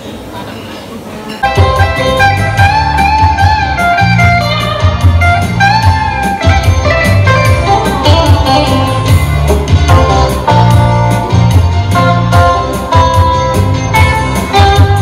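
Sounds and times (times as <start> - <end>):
bluesy electric guitar music: 1.4 - 15.0.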